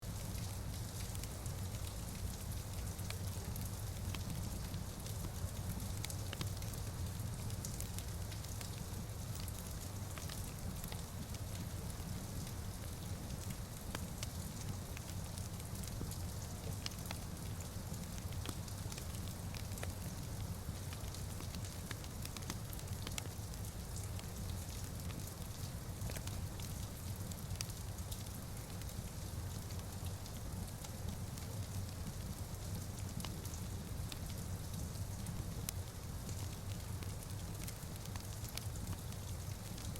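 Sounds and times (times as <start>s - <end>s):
wood fire crackling and popping: 0.4s - 39.9s
fire pops and snaps: 21.0s - 23.3s.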